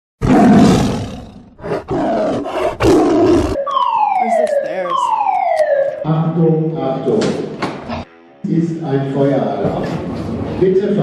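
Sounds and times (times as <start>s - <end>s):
falling alarm tone: 3.2s - 6.4s
harsh alarm blasts: 3.2s - 6.6s.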